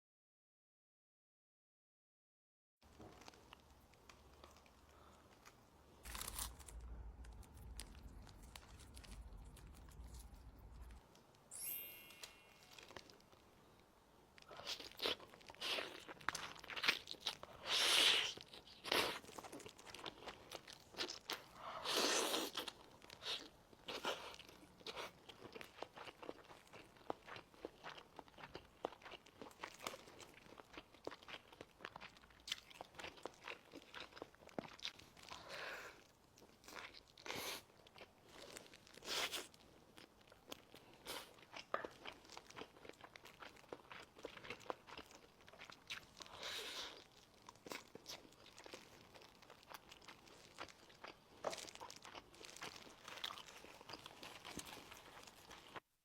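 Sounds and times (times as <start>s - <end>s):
crunching and crinkling: 2.8s - 11.3s, 38.0s - 55.8s
crunchy bites: 3.1s - 11.0s
person chewing chicken: 3.1s - 11.0s, 14.4s - 55.8s.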